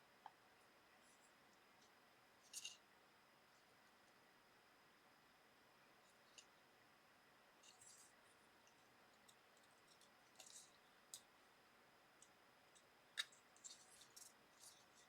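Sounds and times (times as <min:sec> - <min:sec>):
clicks and scrapes of small parts: 0:01.8 - 0:02.8, 0:07.6 - 0:11.3, 0:12.2 - 0:15.0.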